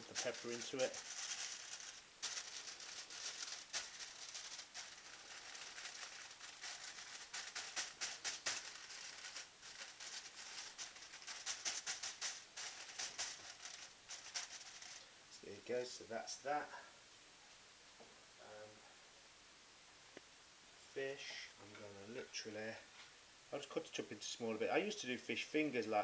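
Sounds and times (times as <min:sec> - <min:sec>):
hands rubbing meat: 0:00.0 - 0:15.0.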